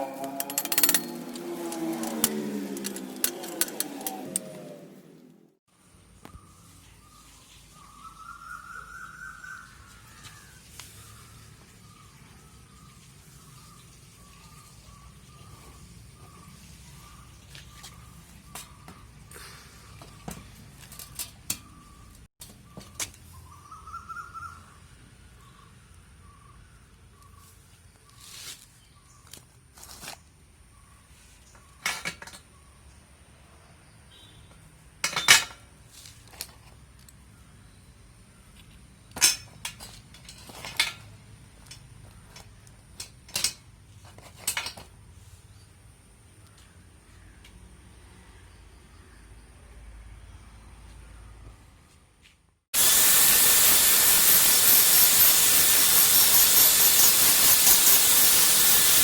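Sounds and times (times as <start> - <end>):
metallic clinks and knocks: 0.2 - 4.2.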